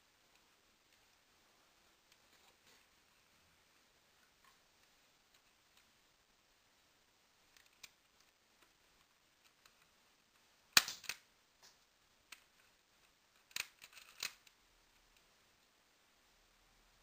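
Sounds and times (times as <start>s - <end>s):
plastic clicks and snaps: 10.7s - 12.5s, 13.4s - 15.3s.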